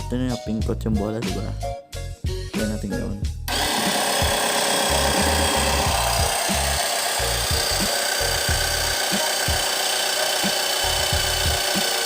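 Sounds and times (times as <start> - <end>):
bass-heavy music: 0.0 - 12.0
air compressor buzzing rattle: 3.5 - 12.0.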